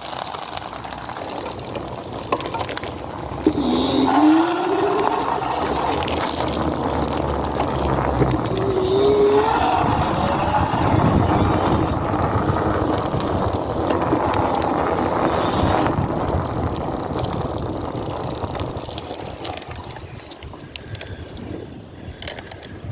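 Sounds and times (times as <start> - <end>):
electric hub motor grinding: 0.0 - 21.1
rising whine: 3.2 - 20.0.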